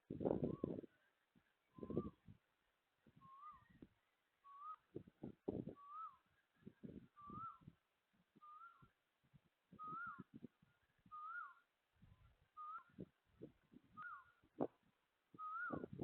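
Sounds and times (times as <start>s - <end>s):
bird whistling call: 1.7s - 2.2s, 3.2s - 3.8s, 4.4s - 4.8s, 5.8s - 6.2s, 7.2s - 7.7s, 8.4s - 8.9s, 9.8s - 10.3s, 11.0s - 11.6s, 12.6s - 13.0s, 14.0s - 14.3s, 15.4s - 16.0s.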